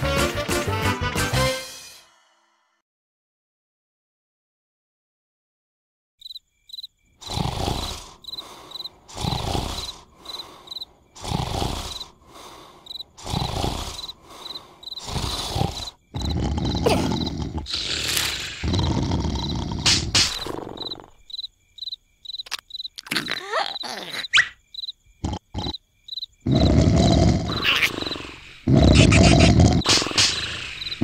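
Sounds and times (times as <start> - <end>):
crickets chirping: 6.2 - 31.0
cartoon snoring: 7.2 - 21.3, 25.2 - 25.8, 26.4 - 31.0.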